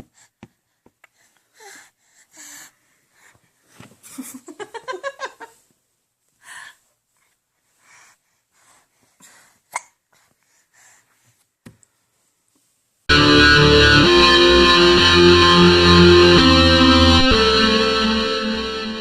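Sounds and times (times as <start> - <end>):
distorted electric guitar music: 13.1 - 19.0.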